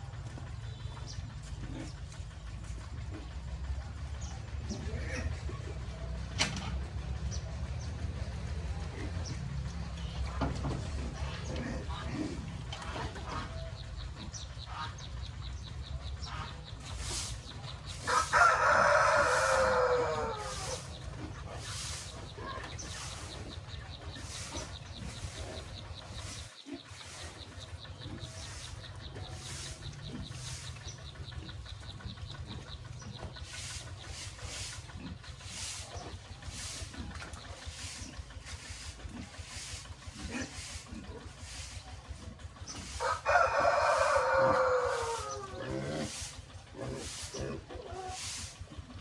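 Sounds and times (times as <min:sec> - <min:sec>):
faint regular pulsing: 0:16.0 - 0:48.6
rooster crowing: 0:18.0 - 0:20.9, 0:43.0 - 0:46.2.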